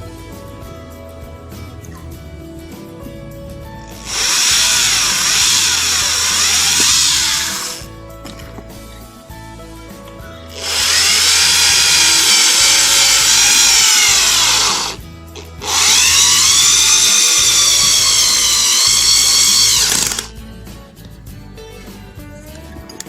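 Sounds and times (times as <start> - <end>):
background music: 0.0 - 23.0
power screwdriver motor whining: 3.9 - 7.9, 10.5 - 15.0, 15.6 - 20.3.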